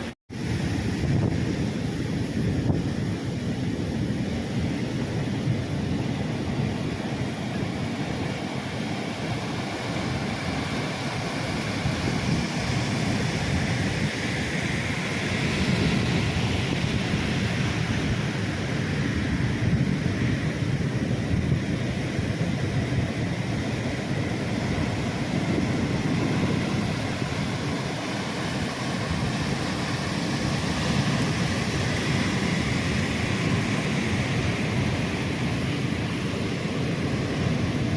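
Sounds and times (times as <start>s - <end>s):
ocean waves breaking on beach: 0.0s - 37.9s
wind rumbling on microphone: 0.0s - 37.9s.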